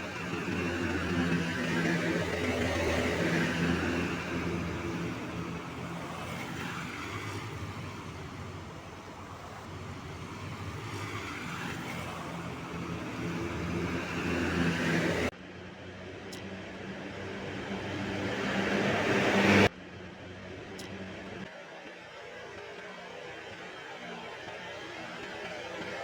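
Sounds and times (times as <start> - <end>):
vehicle engine running: 0.0 - 15.3
traffic noise: 0.0 - 21.5.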